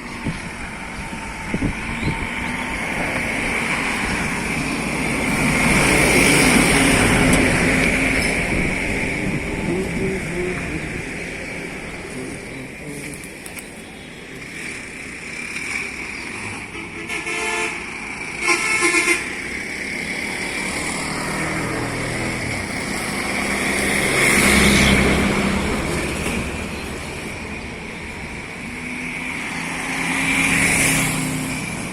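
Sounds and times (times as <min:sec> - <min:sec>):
road traffic passing: 0:00.0 - 0:31.9
vehicle horn honking: 0:16.7 - 0:17.8, 0:18.4 - 0:19.3.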